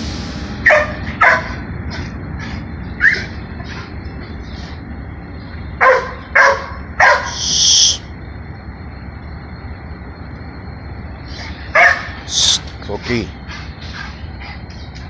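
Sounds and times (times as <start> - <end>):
dog barking: 0.6 - 3.9, 5.8 - 7.6, 11.7 - 12.5
brief high hissing noise: 7.2 - 8.1, 12.3 - 12.8.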